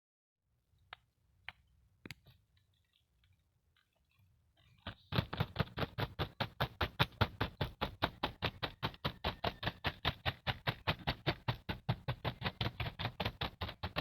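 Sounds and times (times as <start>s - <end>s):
fast even tapping: 5.1s - 14.0s.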